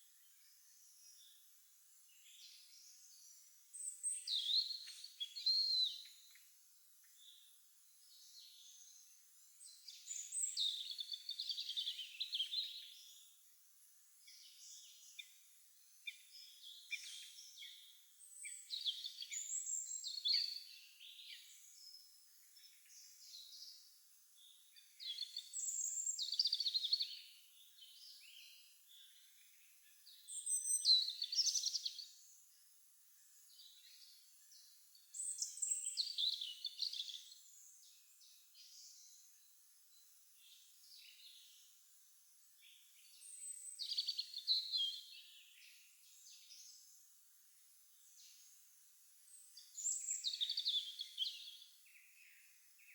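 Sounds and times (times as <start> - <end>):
songbirds singing: 0.0 - 52.9
bird chirps: 33.3 - 39.3, 42.7 - 46.9, 49.3 - 52.9.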